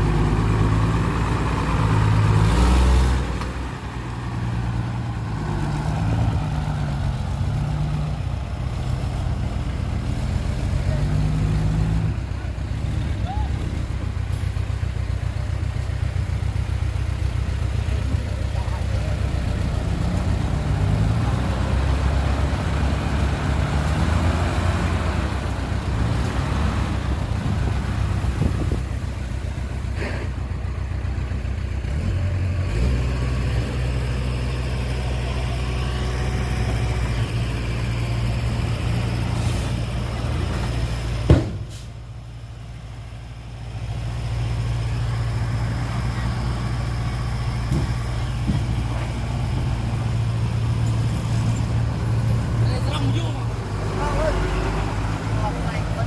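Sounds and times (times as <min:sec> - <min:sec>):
heavy diesel engine running: 0:00.0 - 0:56.0
sharp bang: 0:41.3 - 0:41.8.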